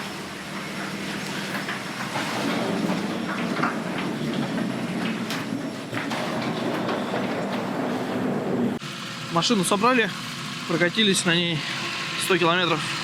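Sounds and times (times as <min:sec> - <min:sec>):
car engine running: 0:08.4 - 0:13.0.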